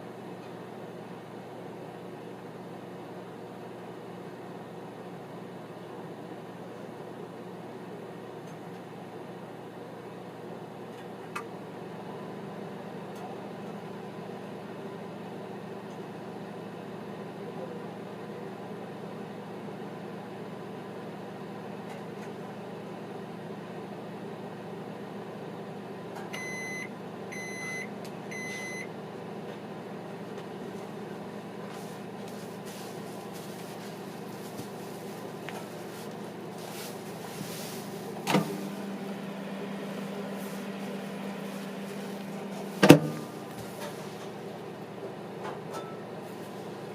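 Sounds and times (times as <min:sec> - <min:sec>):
microwave oven humming: 0:00.0 - 0:46.9
microwave beeps: 0:26.3 - 0:28.9.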